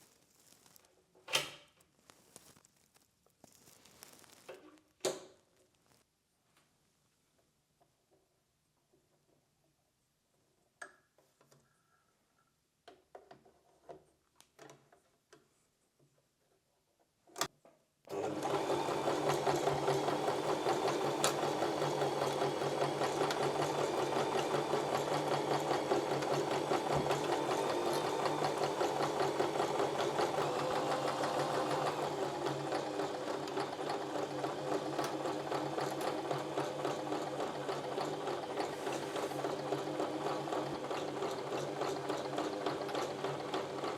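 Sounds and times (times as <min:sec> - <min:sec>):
electric sewing machine stitching: 0:18.1 - 0:43.9.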